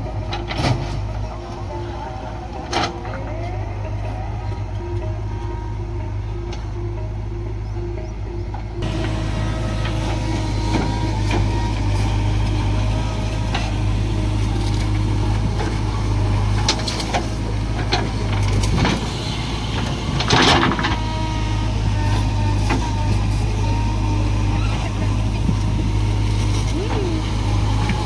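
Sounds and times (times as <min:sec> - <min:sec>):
heavy diesel engines running: 0:00.0 - 0:28.0
knocks and clanks: 0:14.6 - 0:21.1.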